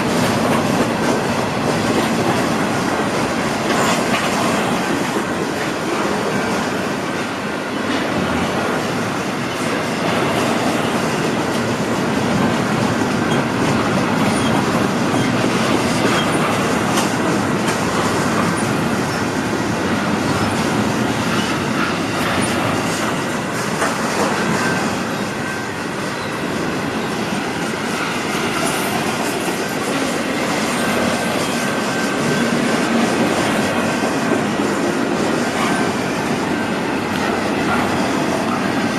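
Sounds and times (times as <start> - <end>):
freight train cars rolling past: 0.0 - 38.9
high wheel squeal: 24.4 - 33.2.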